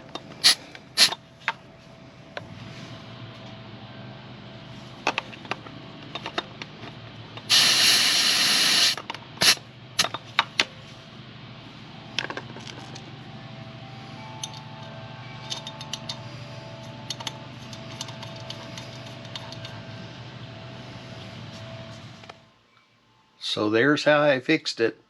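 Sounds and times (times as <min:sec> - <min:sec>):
low steady hum: 0:00.0 - 0:24.1
air chuck and hose clicking: 0:00.4 - 0:01.2, 0:07.4 - 0:10.1
air hissing from tyre valve: 0:00.4 - 0:01.2, 0:07.4 - 0:09.6.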